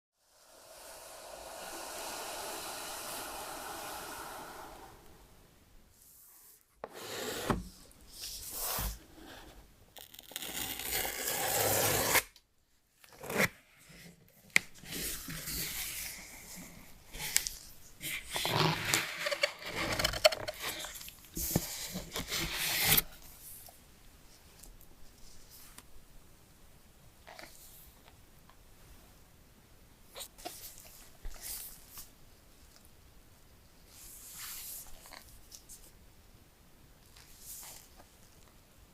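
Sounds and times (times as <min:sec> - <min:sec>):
steady hiss: 0:00.2 - 0:09.0.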